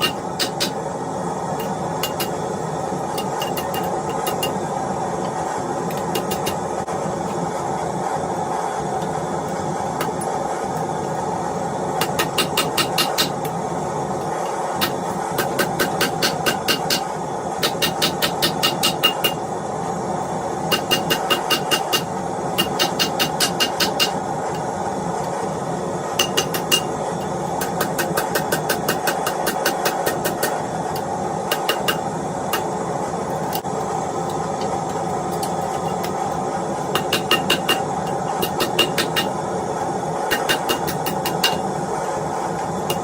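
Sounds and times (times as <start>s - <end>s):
hammer striking steel on anvil: 0.0s - 0.8s, 1.6s - 2.4s, 3.1s - 4.6s, 5.9s - 6.6s, 12.0s - 13.5s, 14.8s - 19.4s, 20.7s - 24.7s, 26.2s - 26.9s, 27.6s - 32.7s, 37.0s - 39.4s, 40.3s - 41.7s.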